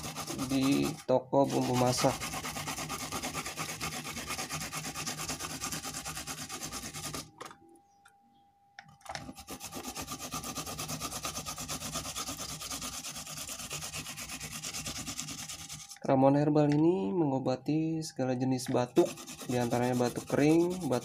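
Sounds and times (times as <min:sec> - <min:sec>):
rhizome rasping on hand grater: 0:00.0 - 0:07.3, 0:09.2 - 0:16.0, 0:18.9 - 0:21.0.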